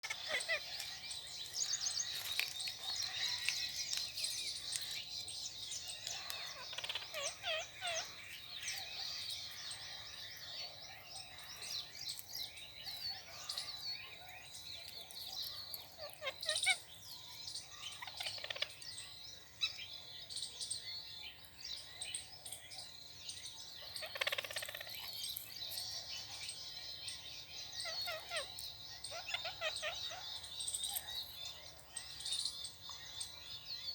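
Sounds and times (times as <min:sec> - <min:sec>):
parrots screeching: 0:00.0 - 0:00.8
parrots chirping and squawking: 0:00.0 - 0:05.0, 0:06.0 - 0:10.2, 0:11.3 - 0:17.0, 0:17.9 - 0:18.7, 0:23.8 - 0:26.0, 0:27.7 - 0:31.6.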